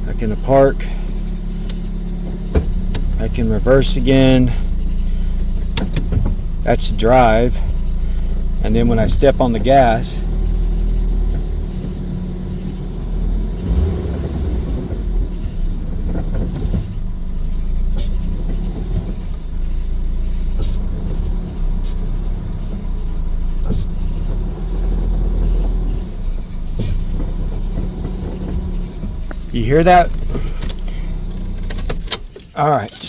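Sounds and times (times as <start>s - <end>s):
car engine drone: 0.0s - 33.0s.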